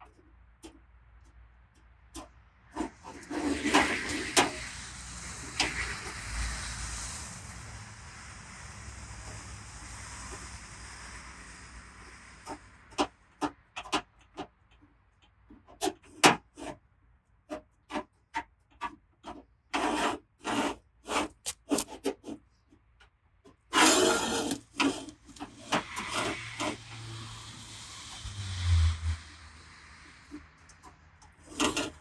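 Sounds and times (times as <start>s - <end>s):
rubbing and scraping on car panel: 2.1s - 6.5s, 12.0s - 27.2s, 30.0s - 32.0s.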